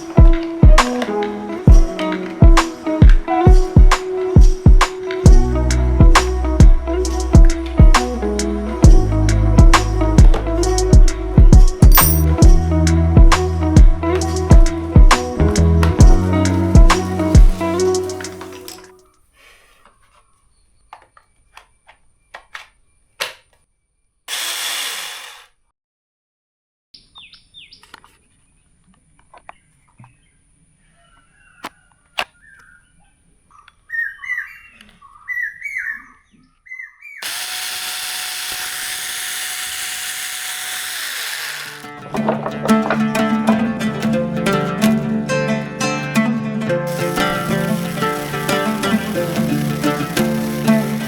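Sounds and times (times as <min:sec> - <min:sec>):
mini chainsaw running: 0:24.3 - 0:25.6, 0:37.2 - 0:41.9, 0:46.9 - 0:51.0.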